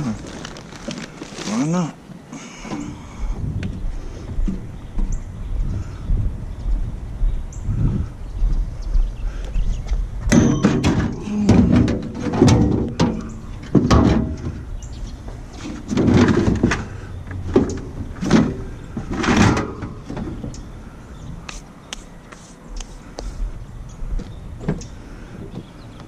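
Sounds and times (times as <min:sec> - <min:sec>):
scrap metal clanking and scraping: 0:10.3 - 0:20.6.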